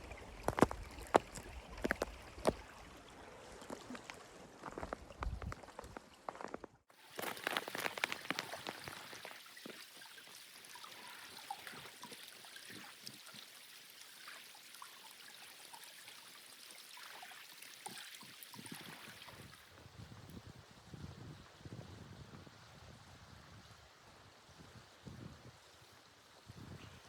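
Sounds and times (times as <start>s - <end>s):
water running and trickling: 0.0s - 19.8s.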